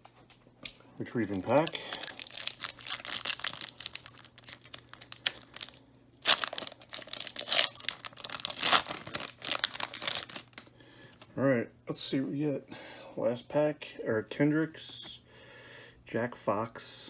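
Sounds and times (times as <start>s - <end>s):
foil wrapper tearing and crinkling: 1.1s - 10.7s.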